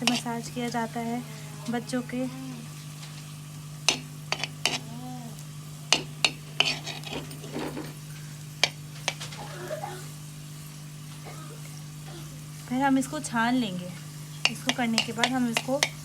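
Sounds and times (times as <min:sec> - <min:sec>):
faint oil sizzle: 0:00.0 - 0:16.0
metal spoon clinking against pan: 0:14.4 - 0:16.0.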